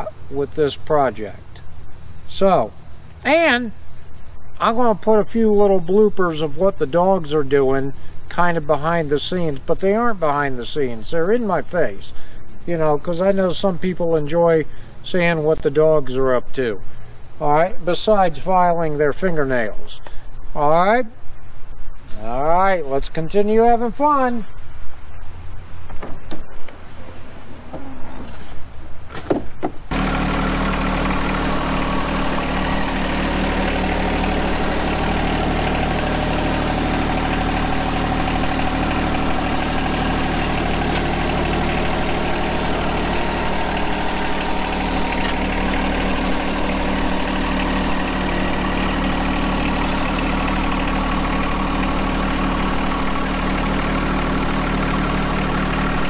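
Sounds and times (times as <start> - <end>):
tractor diesel engine running: 0.0 - 12.1, 29.9 - 56.0
crickets chirping: 0.0 - 56.0.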